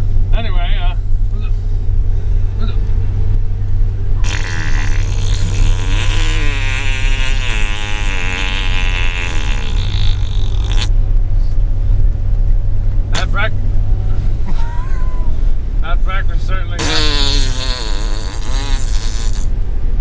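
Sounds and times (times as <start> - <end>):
road rumble inside car: 0.0 - 20.0.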